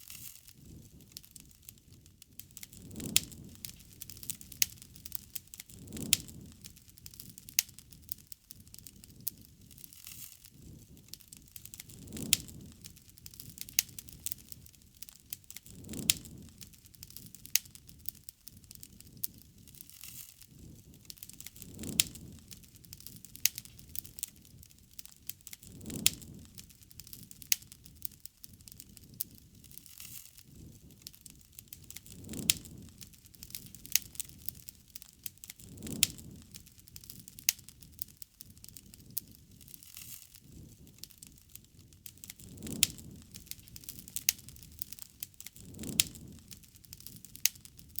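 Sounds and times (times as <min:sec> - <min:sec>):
wood fire crackling: 0:00.0 - 0:48.0.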